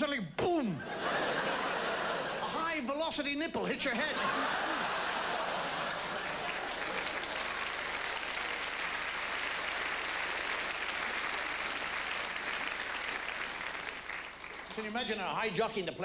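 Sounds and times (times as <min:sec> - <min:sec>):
audience laughing: 0:00.8 - 0:02.8, 0:03.8 - 0:07.6
audience clapping: 0:04.7 - 0:15.4.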